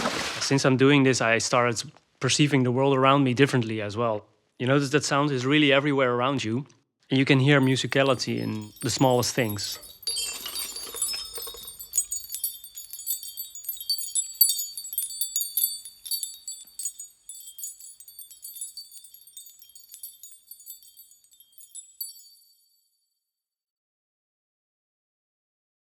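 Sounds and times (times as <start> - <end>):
wind chimes tinkling: 7.3 - 22.9.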